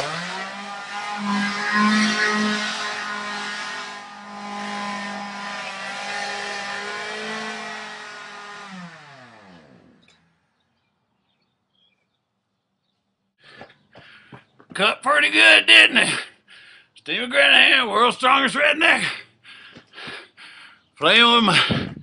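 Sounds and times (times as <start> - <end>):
chainsaw engine running: 0.0 - 10.4.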